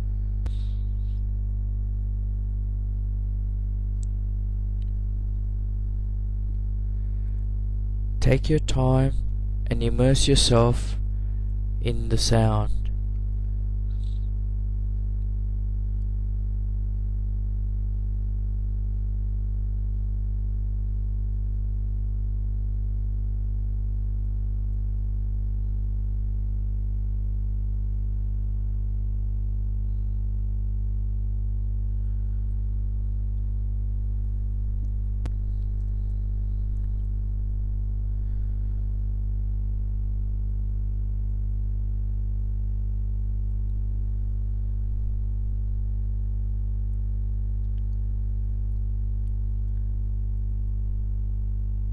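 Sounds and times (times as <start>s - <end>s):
steady low hum: 0.0s - 51.9s.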